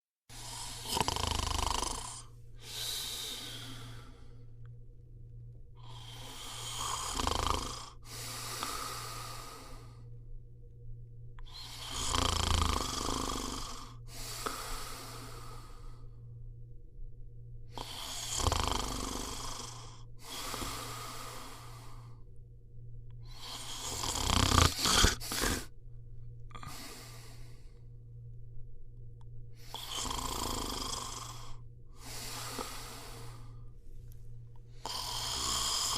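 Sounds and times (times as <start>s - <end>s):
person snoring: 0.3s - 4.5s, 5.8s - 10.1s, 11.4s - 16.2s, 17.7s - 22.3s, 23.2s - 25.7s, 26.5s - 27.8s, 29.6s - 33.7s, 34.7s - 35.9s
steady low hum: 0.3s - 35.9s
sharp snorts: 23.4s - 25.7s.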